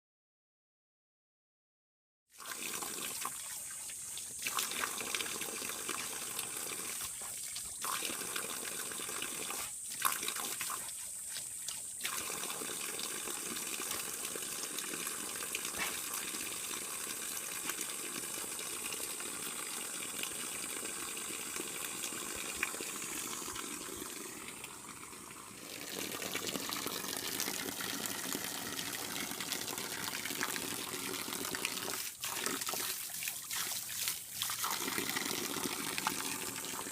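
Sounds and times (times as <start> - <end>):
waterfall splashing into pool: 25.4 - 36.9.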